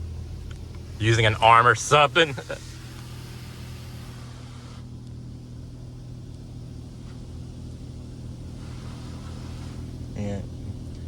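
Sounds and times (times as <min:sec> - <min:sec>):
low hum: 0:00.0 - 0:11.0
car wash spray hiss: 0:01.4 - 0:05.0, 0:08.5 - 0:10.1.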